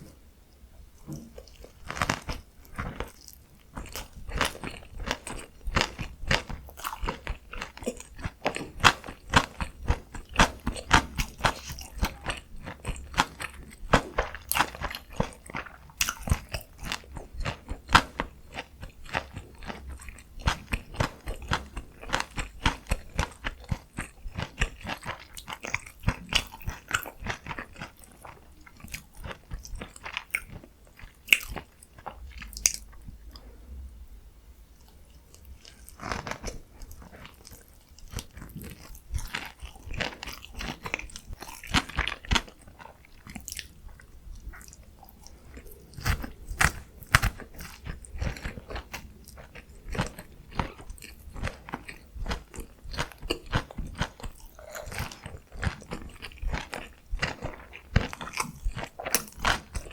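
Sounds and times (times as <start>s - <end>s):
crunchy chewing and biting: 1.1s - 33.0s, 34.8s - 59.9s
wet mouth clicks: 58.4s - 59.9s.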